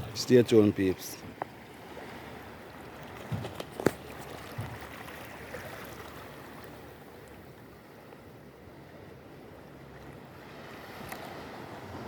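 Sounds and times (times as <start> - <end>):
water rushing on rocky shore: 0.0 - 7.2.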